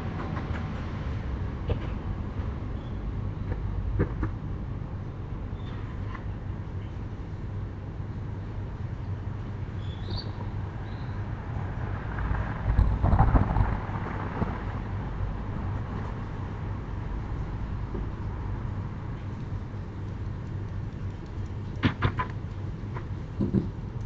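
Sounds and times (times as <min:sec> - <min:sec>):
low background hum: 0:00.0 - 0:24.0
road vehicle passing by: 0:10.2 - 0:19.2.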